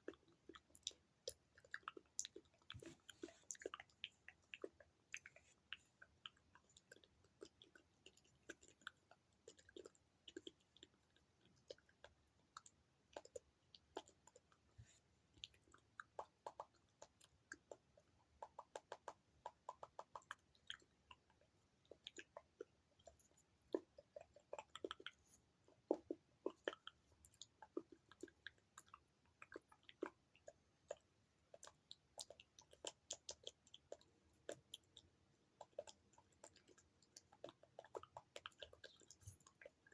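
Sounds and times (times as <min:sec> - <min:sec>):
wet mouth clicks and smacks: 0:00.0 - 0:14.7, 0:15.4 - 0:39.9.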